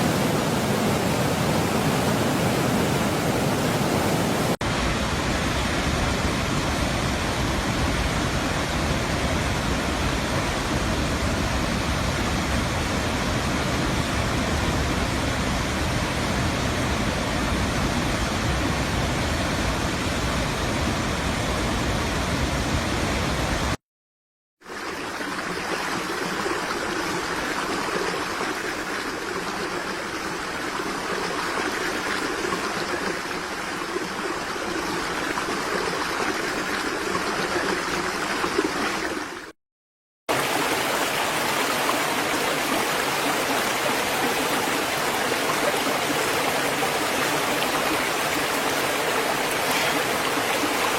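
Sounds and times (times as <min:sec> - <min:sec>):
waterfall rushing: 0:00.0 - 0:23.8, 0:40.3 - 0:50.9.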